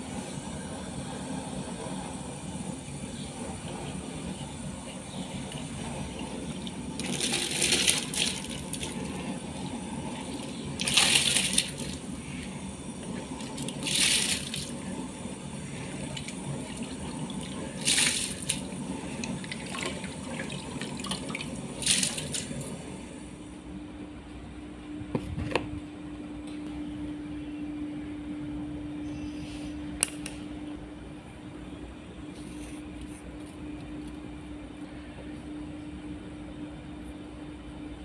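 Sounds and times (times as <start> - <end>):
steady low hum: 0.0 - 38.0
running or splashing water: 5.5 - 12.4, 13.1 - 14.8, 15.8 - 22.7.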